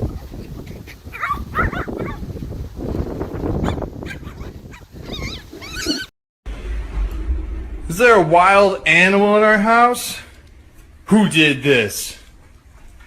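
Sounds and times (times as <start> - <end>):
dog whining and yipping: 1.1 - 2.2, 3.6 - 6.1
low rumbling noise: 6.5 - 11.1.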